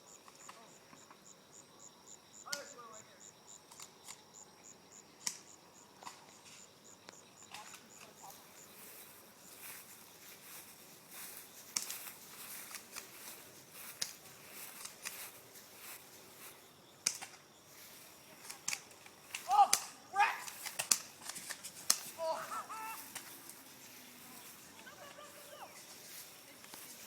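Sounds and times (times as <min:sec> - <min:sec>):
crickets chirping: 0:00.0 - 0:27.0
sharp clicks and ticks: 0:03.7 - 0:04.3, 0:11.7 - 0:15.2, 0:17.0 - 0:17.4, 0:18.4 - 0:22.1
soft rustling: 0:08.0 - 0:16.8, 0:20.5 - 0:27.0.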